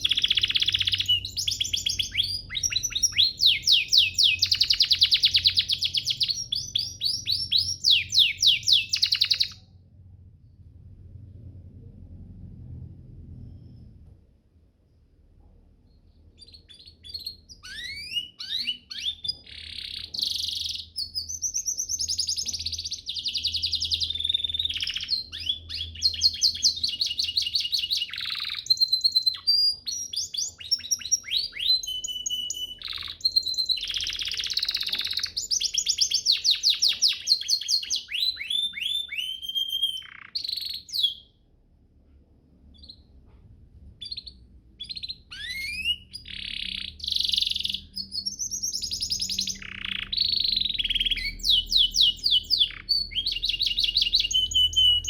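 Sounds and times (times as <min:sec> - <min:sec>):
canary singing: 0:00.0 - 0:09.7, 0:15.9 - 0:41.6, 0:42.6 - 0:43.2, 0:43.9 - 0:55.0
faint hum: 0:09.5 - 0:17.6.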